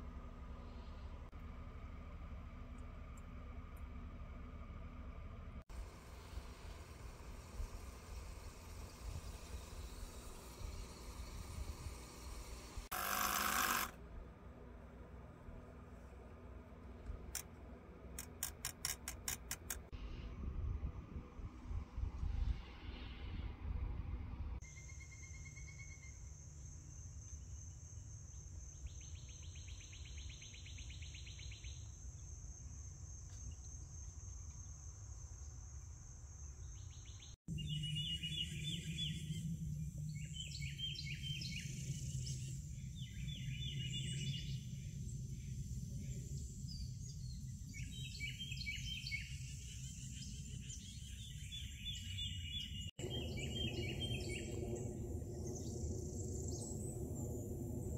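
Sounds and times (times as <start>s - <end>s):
insects droning: 5.7s - 13.9s
birds chirping: 40.2s - 57.6s
low rumble: 53.0s - 57.9s.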